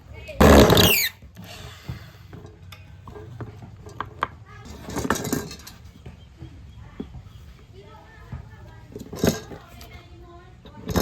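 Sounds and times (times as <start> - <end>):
metal parts clinking: 2.4 - 5.8.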